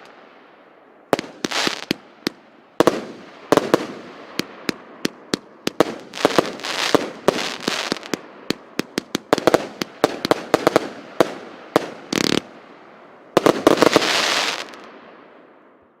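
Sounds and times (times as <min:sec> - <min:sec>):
fireworks cake firing: 0:01.2 - 0:12.5.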